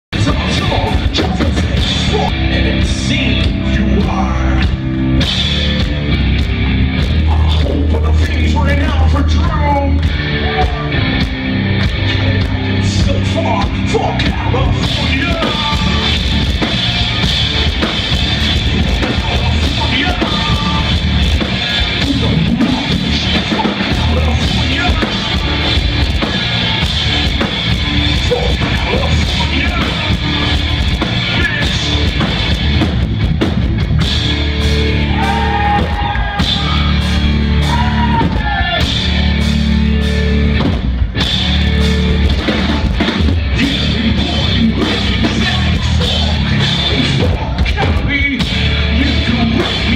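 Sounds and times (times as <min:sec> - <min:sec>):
drum kit: 0:00.0 - 0:49.9
live rock band playing: 0:00.0 - 0:49.9
person singing: 0:12.0 - 0:16.2, 0:18.9 - 0:21.1, 0:21.9 - 0:26.0, 0:28.2 - 0:30.5.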